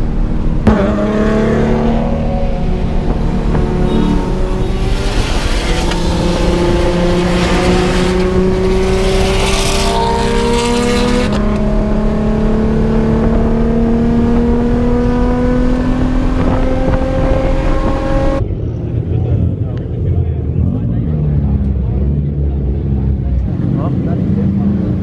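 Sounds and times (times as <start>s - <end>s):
car engine accelerating: 0.0s - 25.0s.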